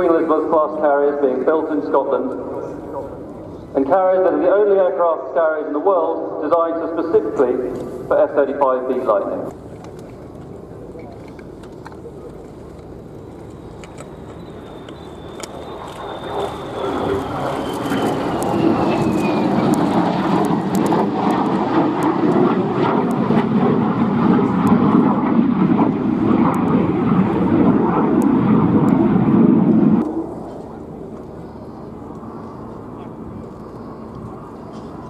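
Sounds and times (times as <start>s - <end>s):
jet engine roar: 0.0s - 35.0s
high whine falling in pitch: 13.2s - 22.0s.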